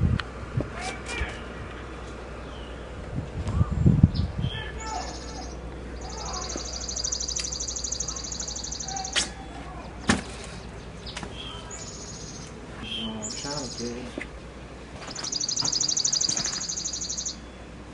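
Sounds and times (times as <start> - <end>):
birds chirping: 1.3 - 17.9
bird trilling: 4.1 - 14.1, 15.0 - 17.6
sharp clicks: 6.6 - 7.7.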